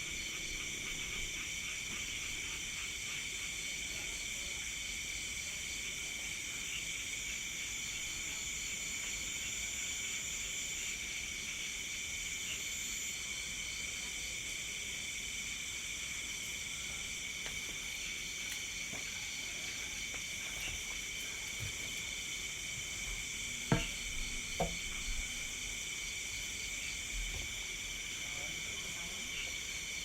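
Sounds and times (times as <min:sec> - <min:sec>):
crickets and insects trilling: 0:00.0 - 0:30.0
sharp knocks: 0:23.7 - 0:25.0.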